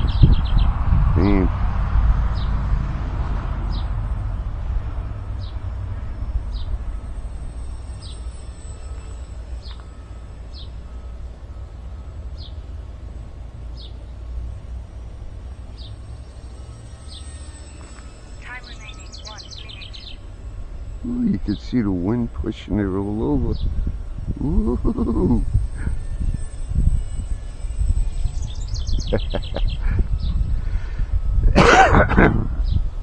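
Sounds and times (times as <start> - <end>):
bird chirping: 0.0 - 33.0
wind buffeting microphone: 0.0 - 33.0.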